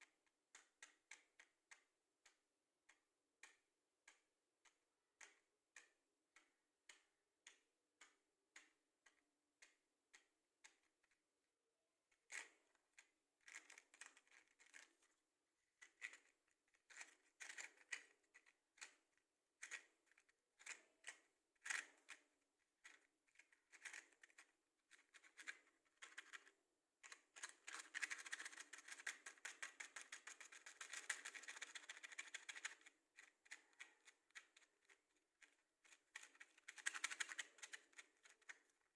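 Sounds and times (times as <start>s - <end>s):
wooden matchsticks clicking and rattling: 27.1s - 38.9s.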